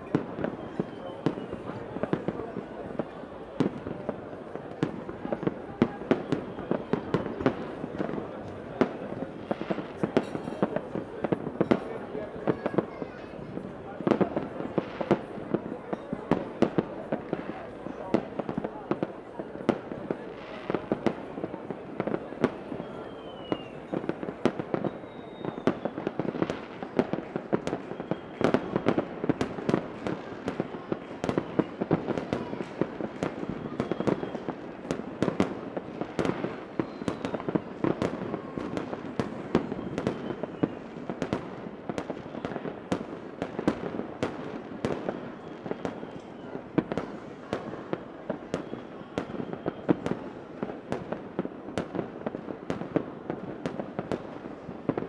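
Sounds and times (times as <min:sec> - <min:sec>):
faint firework whistles: 0:00.0 - 0:02.7, 0:20.4 - 0:50.4
fireworks bangs and crackles: 0:00.0 - 0:55.0.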